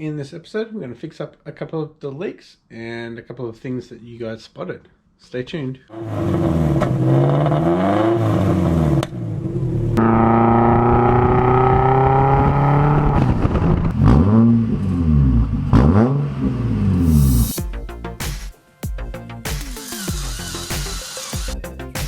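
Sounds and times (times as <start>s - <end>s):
car engine revving: 6.0s - 17.6s.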